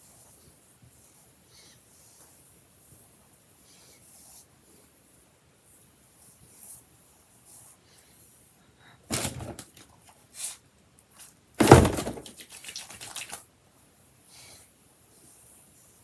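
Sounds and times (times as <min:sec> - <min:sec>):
objects thudding: 0:09.1 - 0:09.7, 0:11.6 - 0:12.4.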